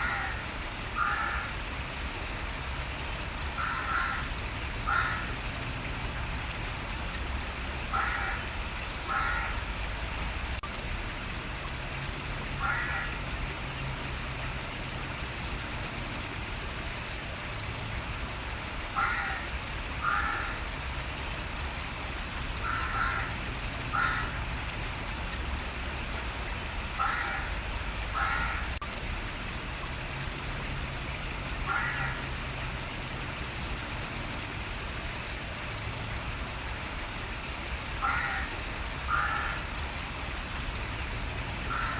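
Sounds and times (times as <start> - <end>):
crow cawing: 0.0 - 0.4, 1.0 - 1.5, 3.6 - 4.3, 4.9 - 5.3, 7.9 - 8.4, 9.1 - 9.6, 12.6 - 13.2, 19.0 - 20.6, 22.6 - 24.4, 27.0 - 27.5, 28.2 - 28.7, 31.7 - 32.2, 38.0 - 38.5, 39.1 - 39.6, 41.7 - 41.9
running water hiss: 0.0 - 41.9.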